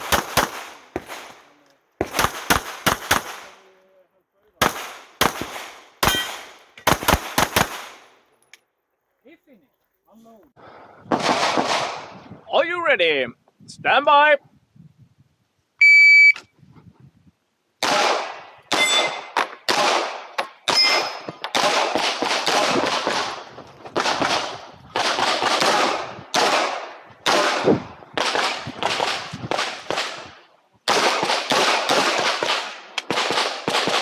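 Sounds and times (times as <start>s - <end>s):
pistol firing rapid shots: 0.0s - 3.7s, 4.6s - 8.1s, 17.8s - 19.0s, 19.7s - 30.1s, 30.9s - 34.0s.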